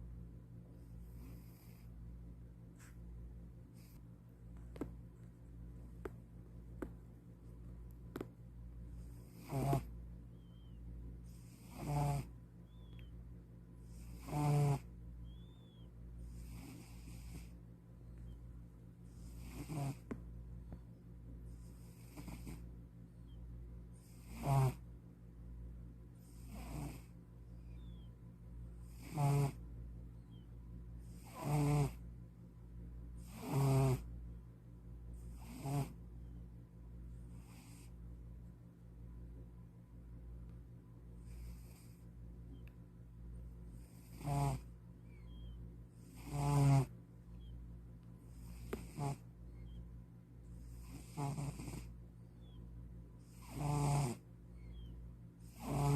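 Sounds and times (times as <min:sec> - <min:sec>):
cat snoring: 0:01.1 - 0:01.9, 0:09.0 - 0:10.7, 0:11.3 - 0:12.9, 0:13.8 - 0:17.6, 0:19.1 - 0:20.2, 0:21.5 - 0:22.7, 0:24.0 - 0:24.8, 0:26.2 - 0:27.2, 0:28.8 - 0:29.6, 0:31.0 - 0:32.0, 0:33.2 - 0:34.1, 0:35.3 - 0:36.0, 0:37.4 - 0:37.9, 0:41.2 - 0:42.0, 0:43.8 - 0:46.9, 0:48.3 - 0:49.2, 0:50.6 - 0:52.6, 0:53.2 - 0:55.9
faint high whistle: 0:15.2 - 0:15.9.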